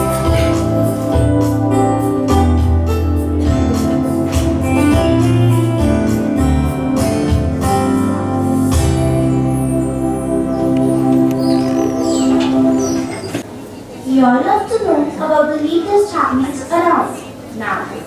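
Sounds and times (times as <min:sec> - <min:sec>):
bass notes: 0:00.0 - 0:13.2
organ-like keyboard chords: 0:00.0 - 0:13.6.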